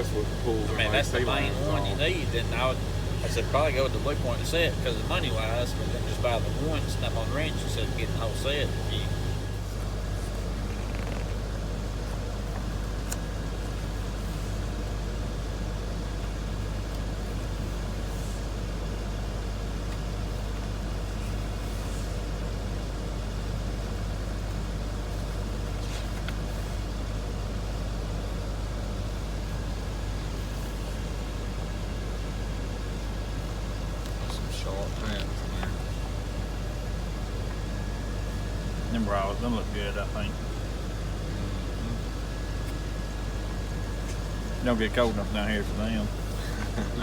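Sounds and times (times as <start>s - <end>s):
faint high whine: 0.0s - 11.3s, 34.0s - 47.0s
low mechanical hum: 0.0s - 47.0s.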